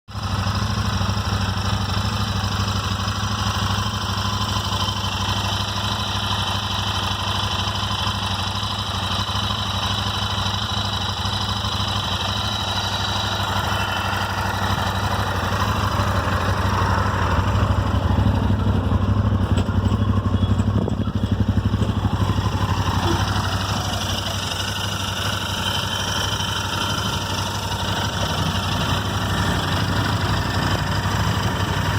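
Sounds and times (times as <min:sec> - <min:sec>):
engine ticking: 0:00.1 - 0:31.9
motorcycle engine idling: 0:00.1 - 0:31.9.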